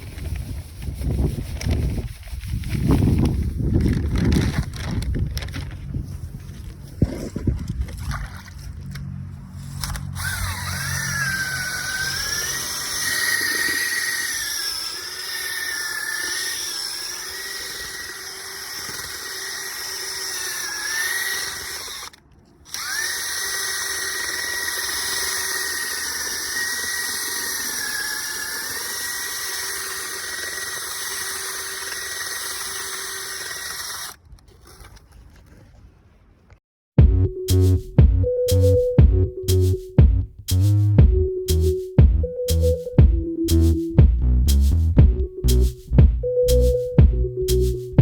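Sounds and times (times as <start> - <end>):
electric drill motor whining: 9.8 - 34.2.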